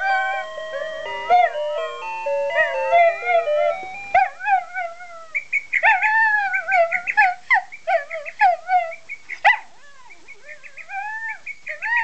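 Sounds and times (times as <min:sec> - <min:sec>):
alarm clock electronic tune: 0:00.0 - 0:04.2
dog howling: 0:00.0 - 0:09.0.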